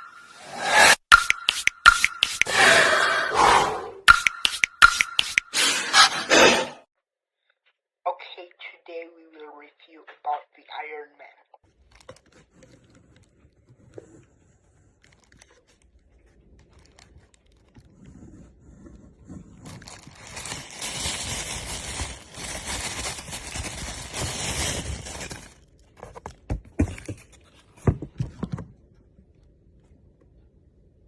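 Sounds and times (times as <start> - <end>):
plastic packaging rustling: 11.7 - 13.8, 14.9 - 18.0, 19.3 - 26.4.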